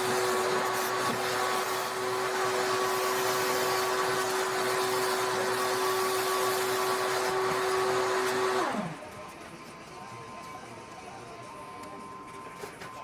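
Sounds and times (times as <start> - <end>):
electric motor spinning: 0.0 - 9.0.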